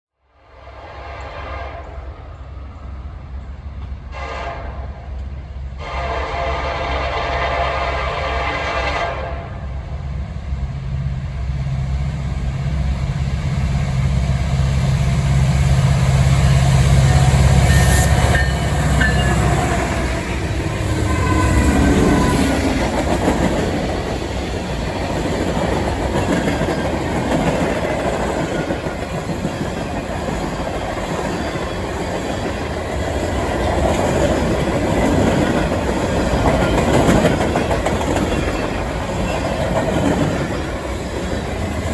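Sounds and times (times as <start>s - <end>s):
diesel locomotives rumbling: 0.5s - 41.9s
freight cars clickety-clack: 18.2s - 41.9s.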